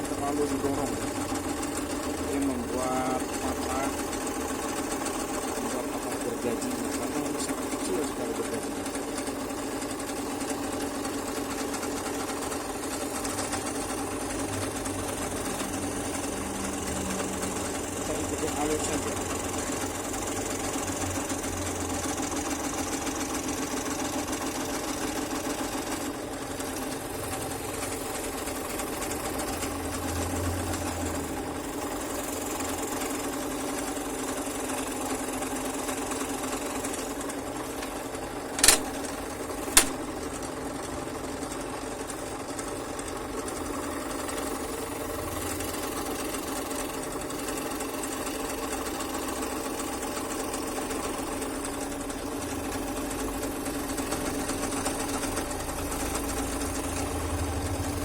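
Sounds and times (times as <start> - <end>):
scroll saw cutting wood: 38.6 - 40.2
sharp clicks: 38.6 - 40.2.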